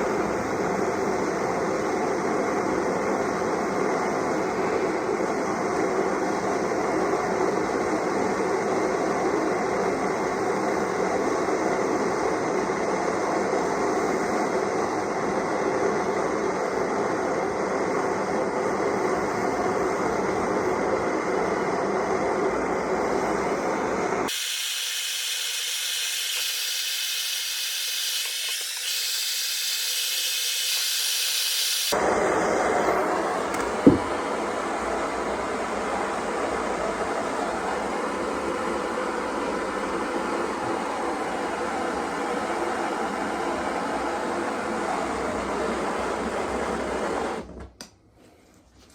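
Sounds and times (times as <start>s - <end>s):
gas blowtorch roaring: 0.0s - 47.5s
high hiss: 24.3s - 32.0s.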